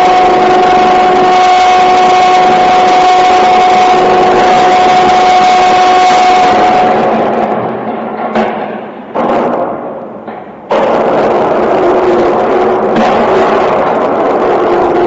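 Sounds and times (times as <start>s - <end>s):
crane engine whining: 0.0s - 7.6s.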